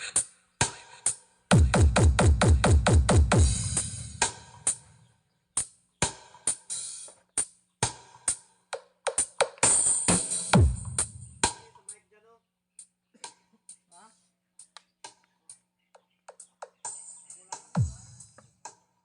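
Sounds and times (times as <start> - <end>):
electronic dance music: 1.5 - 4.8.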